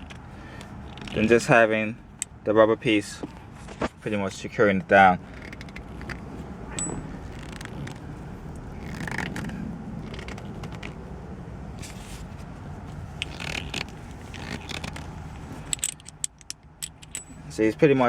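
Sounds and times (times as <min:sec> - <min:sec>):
shift knob scraping and rubbing: 0:00.0 - 0:01.6, 0:04.9 - 0:11.1, 0:11.8 - 0:16.3
steady low hum: 0:00.0 - 0:18.0.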